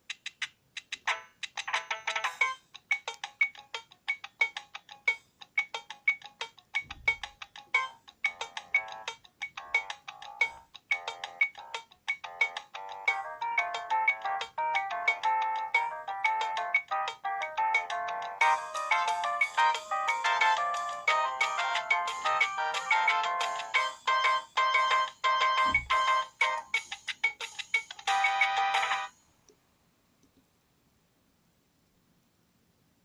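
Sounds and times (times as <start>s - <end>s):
ringtone of plucked notes: 1.1s - 29.2s
held chords: 12.7s - 26.6s.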